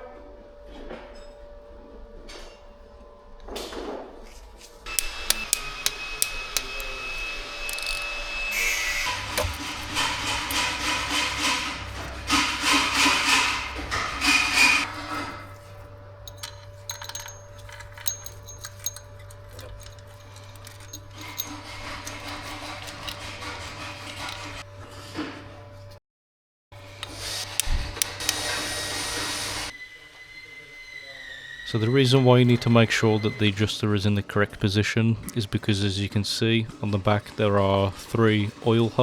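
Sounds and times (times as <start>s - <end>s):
metallic tool clicks and taps: 4.9s - 8.1s, 16.3s - 21.5s
rasping scraping strokes: 4.9s - 24.6s.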